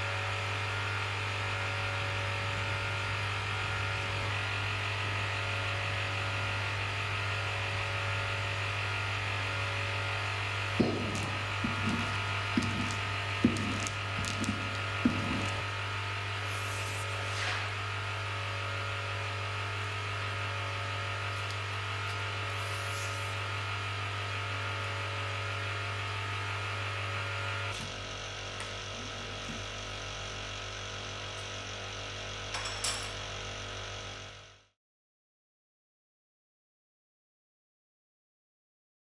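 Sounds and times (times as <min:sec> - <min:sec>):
vacuum pump humming: 0:00.0 - 0:17.2, 0:17.8 - 0:34.4.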